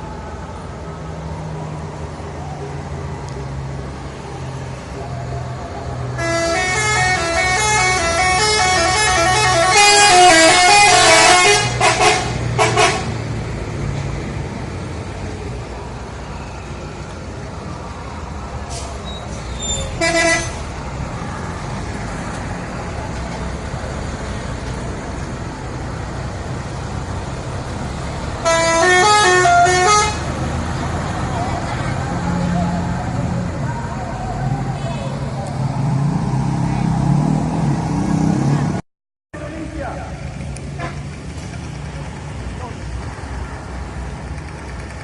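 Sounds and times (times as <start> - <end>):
road noise: 0.0 - 45.0
musical bus horn melody: 6.2 - 13.2, 20.0 - 20.6, 28.4 - 30.3.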